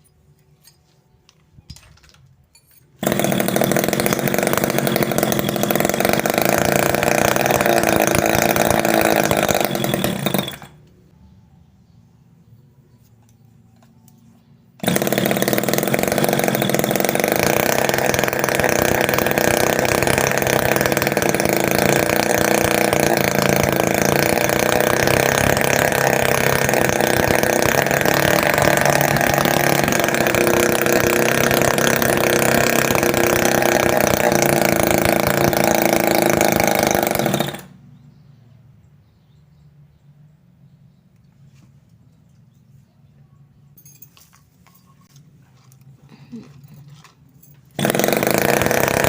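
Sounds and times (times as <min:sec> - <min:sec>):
small two-stroke engine running: 0:03.0 - 0:11.0, 0:14.1 - 0:38.1, 0:46.1 - 0:49.0.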